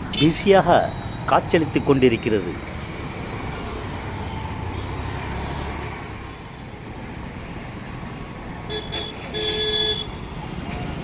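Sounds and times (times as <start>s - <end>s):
passing traffic rumble: 0.0s - 11.0s
vehicle horn honking: 8.7s - 10.2s.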